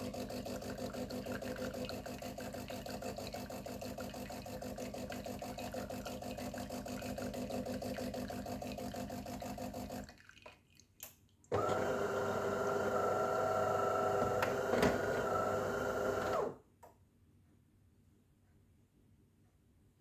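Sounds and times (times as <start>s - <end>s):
coffee machine motor whine: 0.0s - 2.6s, 11.5s - 16.6s
coffee machine pulsing: 0.0s - 10.1s, 11.5s - 16.6s.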